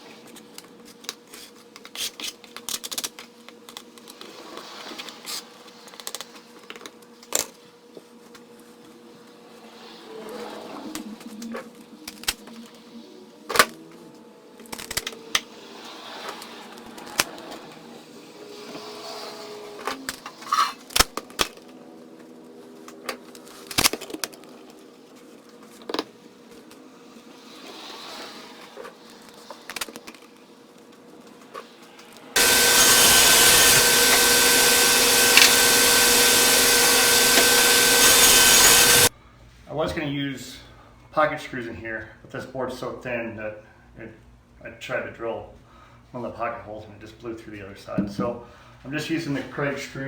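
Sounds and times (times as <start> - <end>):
electric power tool whining: 32.4 - 39.1
wood pieces and tools clattering: 32.4 - 39.1.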